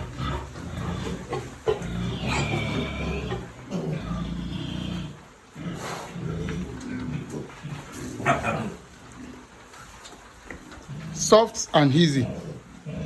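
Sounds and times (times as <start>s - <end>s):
pig whining calls: 0.0s - 9.6s
pigs grunting: 0.0s - 13.0s.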